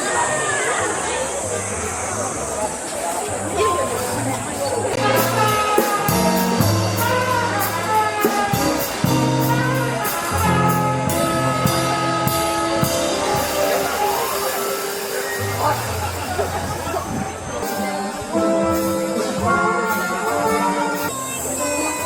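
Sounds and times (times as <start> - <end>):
walking bass: 3.2 - 22.0
jazz band playing: 3.6 - 22.0
steady cymbal beat: 5.0 - 22.0.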